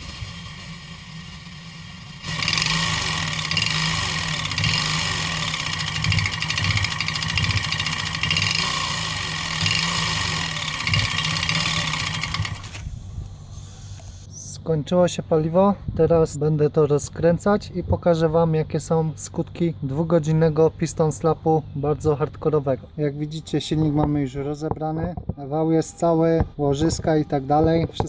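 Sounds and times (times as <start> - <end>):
scooter engine with piston slap: 0.0 - 14.3.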